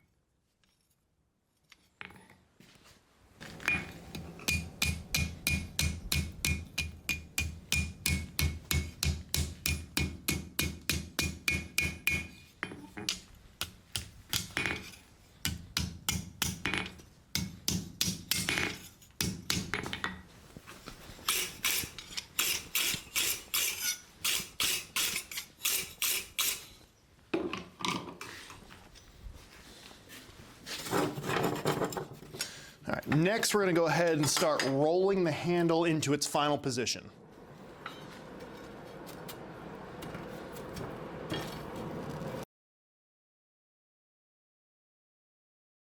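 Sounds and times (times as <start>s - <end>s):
hammer striking steel on anvil: 3.6s - 19.8s.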